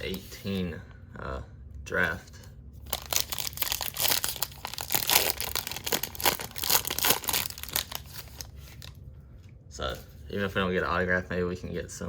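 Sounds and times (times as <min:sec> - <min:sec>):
wrapper crinkling and tearing: 0:02.8 - 0:09.0.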